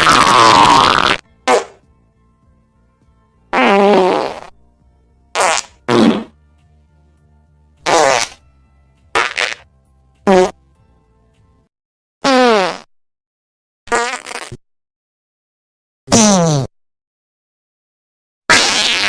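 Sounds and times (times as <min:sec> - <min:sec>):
fart sounds: 0:00.0 - 0:01.8, 0:03.5 - 0:04.6, 0:05.3 - 0:06.4, 0:07.8 - 0:08.4, 0:09.1 - 0:09.6, 0:10.2 - 0:10.6, 0:12.2 - 0:12.9, 0:13.9 - 0:14.6, 0:16.1 - 0:16.7, 0:18.5 - 0:19.0.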